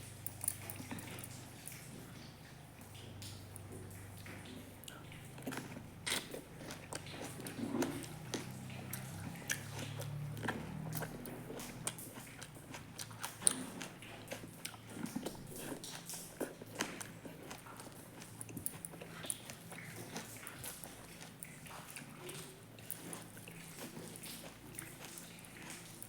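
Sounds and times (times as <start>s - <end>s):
person chewing food: 0.0s - 26.0s.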